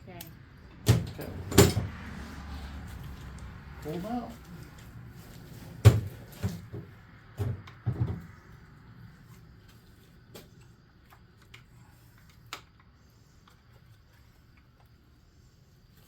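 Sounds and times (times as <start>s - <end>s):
engine parts clunking: 0.2s - 2.2s.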